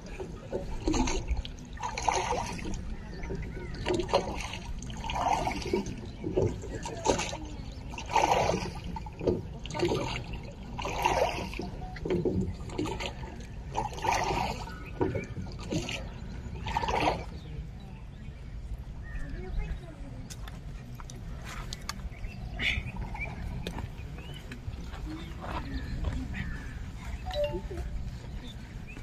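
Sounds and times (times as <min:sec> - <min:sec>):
water trickling and splashing: 0:00.0 - 0:29.0.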